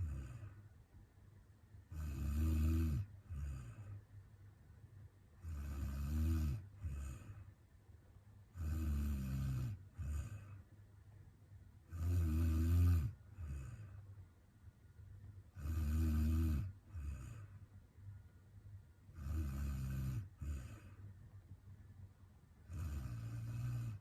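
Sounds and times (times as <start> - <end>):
woman snoring: 0.0 - 0.6, 1.9 - 4.0, 5.4 - 7.4, 8.6 - 10.6, 11.9 - 13.9, 15.5 - 17.5, 19.1 - 21.0, 22.7 - 24.0.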